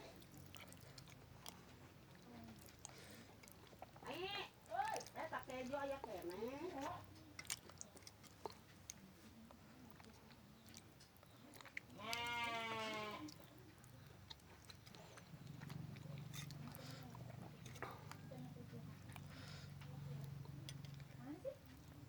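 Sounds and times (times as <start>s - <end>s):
person chewing: 0.0s - 22.0s
animal bleating: 11.9s - 13.4s.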